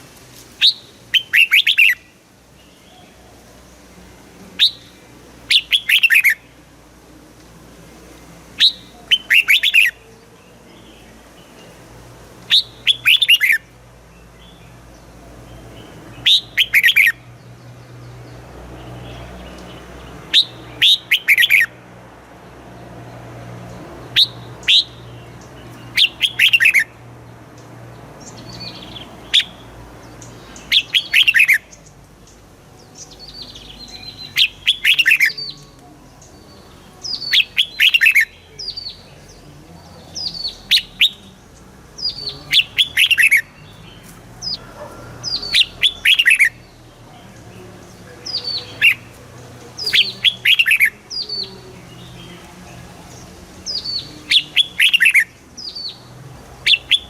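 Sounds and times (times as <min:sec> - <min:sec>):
bird singing: 0:00.6 - 0:06.7, 0:08.5 - 0:57.0.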